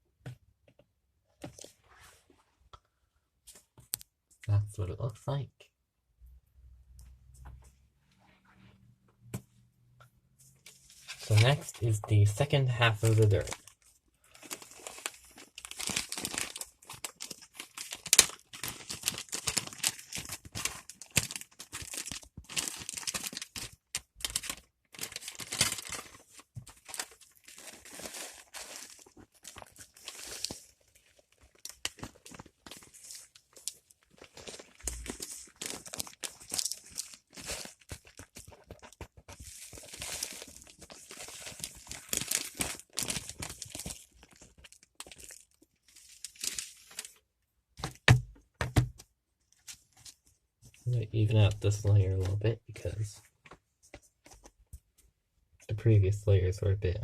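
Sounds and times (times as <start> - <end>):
plastic bag rustling: 13.0 - 47.2.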